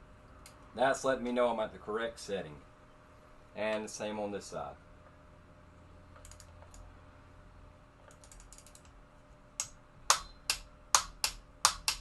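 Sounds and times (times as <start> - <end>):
faint ratchet clicks: 6.2 - 6.8, 8.1 - 9.0.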